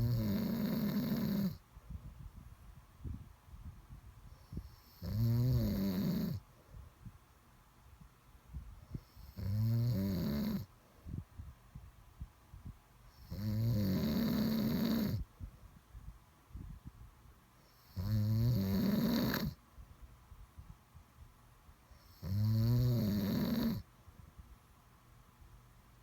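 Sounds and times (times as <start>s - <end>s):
person snoring: 0.0s - 1.6s, 4.9s - 6.4s, 9.4s - 10.7s, 13.3s - 15.2s, 22.2s - 23.8s
quiet breathing: 4.2s - 7.2s, 8.5s - 9.5s.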